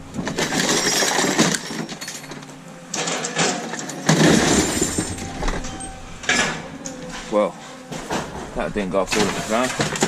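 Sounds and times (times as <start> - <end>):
scrap crashing onto pile: 3.0 - 6.6.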